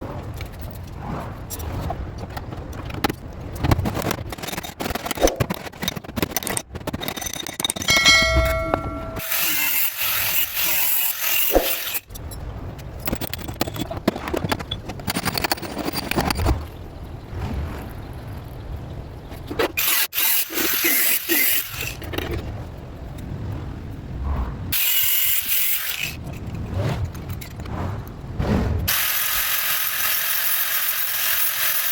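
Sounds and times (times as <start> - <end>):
metal tool ringing: 7.9 - 9.8.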